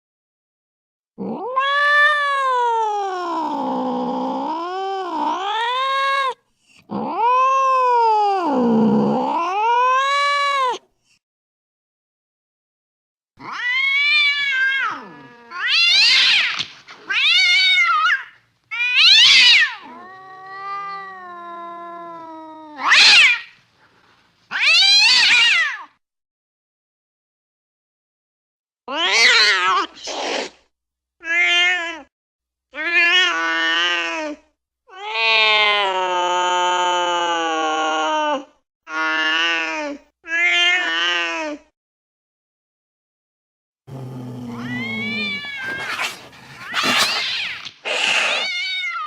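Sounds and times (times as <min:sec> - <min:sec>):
cat yowling and meowing: 0:01.2 - 0:10.8, 0:13.4 - 0:23.6, 0:24.5 - 0:25.9, 0:28.9 - 0:29.9, 0:32.8 - 0:39.7, 0:43.9 - 0:49.0.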